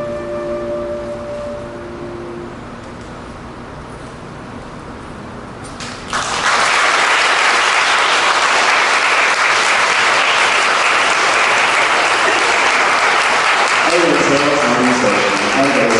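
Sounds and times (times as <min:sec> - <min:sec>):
audience applause: 0:06.0 - 0:15.9.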